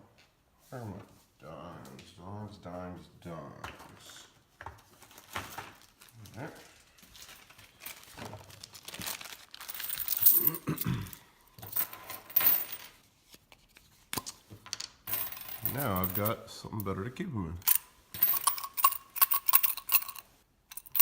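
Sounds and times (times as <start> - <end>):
packaging rustling: 4.9 - 10.5
coins clinking: 9.6 - 13.0, 14.8 - 16.4, 17.6 - 21.0.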